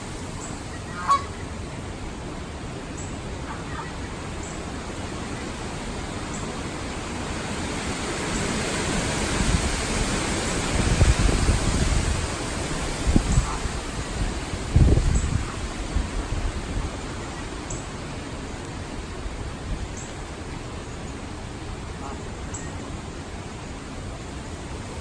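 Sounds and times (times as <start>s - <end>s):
wind and rain rushing: 0.0s - 25.0s
wind gusts buffeting microphone: 6.8s - 20.7s.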